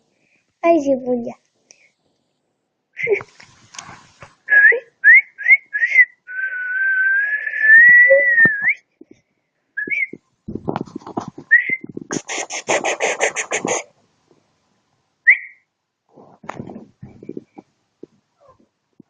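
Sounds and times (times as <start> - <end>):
person whistling: 4.6 - 8.8, 9.8 - 10.2, 11.5 - 12.0, 15.3 - 15.6.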